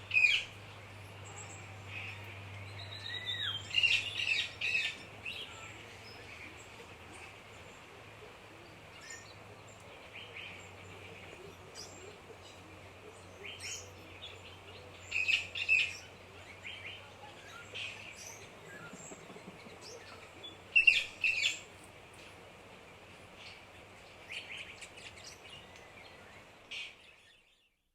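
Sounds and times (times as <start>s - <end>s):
birds calling and chirping: 0.0s - 22.2s
steady background hiss: 0.0s - 27.6s.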